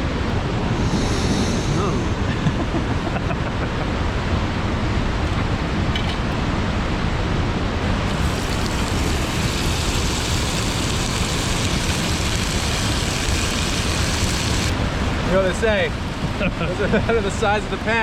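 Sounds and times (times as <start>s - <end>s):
waterfall roaring: 0.5s - 18.0s.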